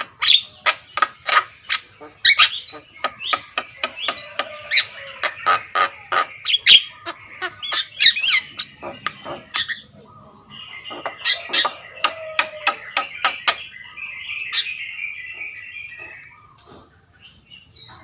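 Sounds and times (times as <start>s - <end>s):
myna bird clicks and whistles: 0.0s - 4.6s, 10.9s - 16.8s.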